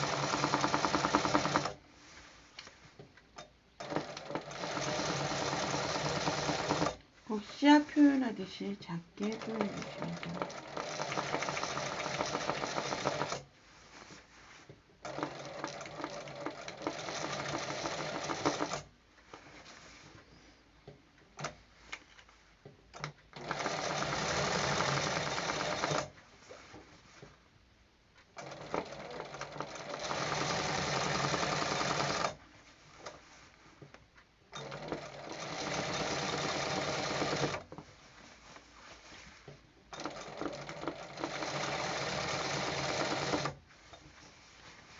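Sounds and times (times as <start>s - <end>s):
sewing machine stitching: 0.0s - 1.8s, 3.4s - 7.0s, 8.9s - 13.5s, 15.0s - 19.8s, 23.0s - 26.1s, 28.4s - 32.4s, 34.5s - 37.9s, 39.1s - 44.0s.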